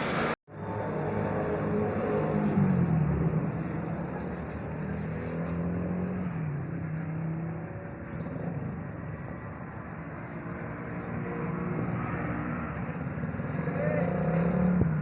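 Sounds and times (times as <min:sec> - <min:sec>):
road noise: 0:00.0 - 0:15.0.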